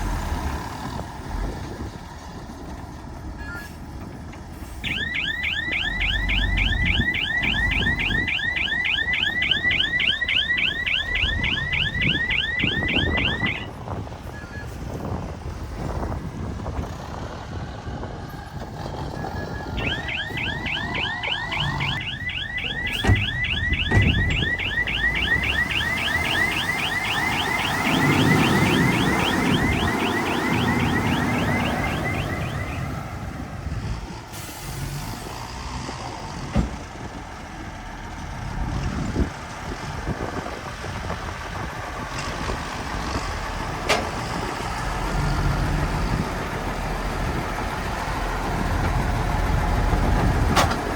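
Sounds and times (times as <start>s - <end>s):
warbling electronic alarm: 4.8s - 13.7s, 19.4s - 33.0s
heavy machinery engine running: 15.6s - 38.6s.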